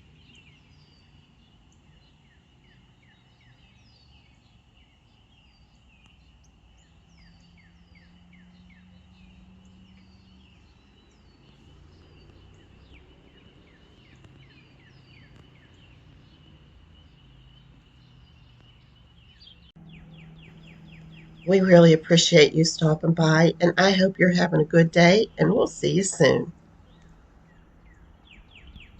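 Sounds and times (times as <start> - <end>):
small birds chirping: 0.0 - 28.9
low hum: 5.8 - 28.9.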